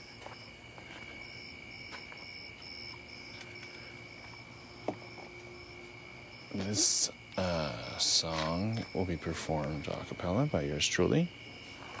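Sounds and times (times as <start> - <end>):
insects chirping in trills: 0.0 - 12.0
steady high background tone: 3.6 - 11.4.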